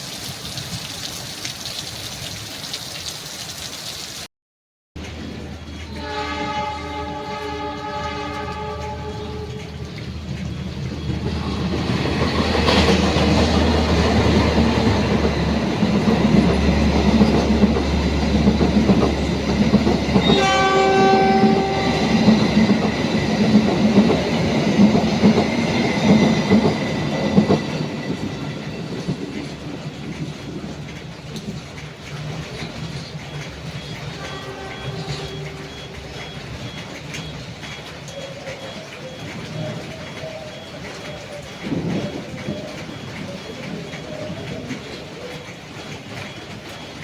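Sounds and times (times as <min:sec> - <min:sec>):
locomotive rumble: 0:05.0 - 0:47.0
train wheels clattering on rails: 0:05.0 - 0:47.0
train horn blast: 0:05.9 - 0:10.0, 0:20.1 - 0:23.4, 0:34.1 - 0:36.2.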